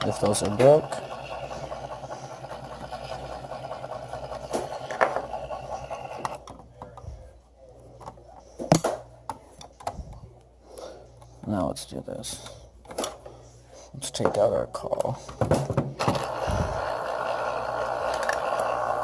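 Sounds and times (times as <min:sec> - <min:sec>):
actuator motor running: 0:00.0 - 0:06.4, 0:16.0 - 0:19.0.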